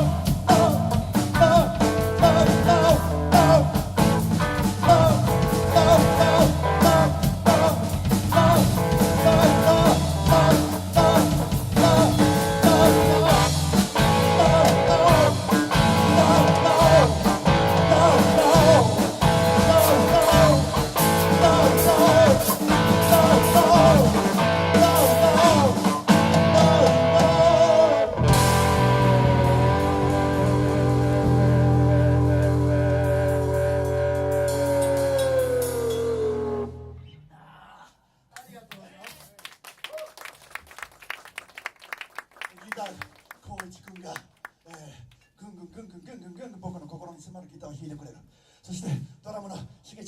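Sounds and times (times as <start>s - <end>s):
live rock band playing: 0.0s - 36.7s
electric guitar bending notes: 8.4s - 37.0s.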